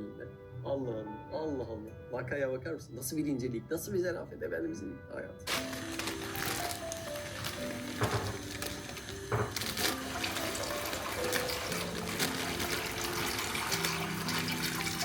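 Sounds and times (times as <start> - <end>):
soft slow background music: 0.0 - 15.0
water running and splashing: 5.5 - 15.0.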